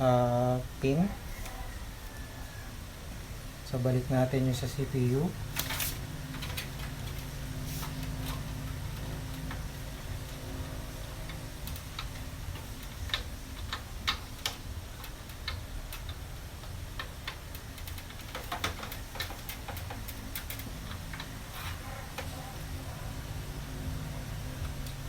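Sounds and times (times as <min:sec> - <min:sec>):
low steady hum: 0:00.0 - 0:25.0
cable connectors clicking: 0:05.6 - 0:22.4.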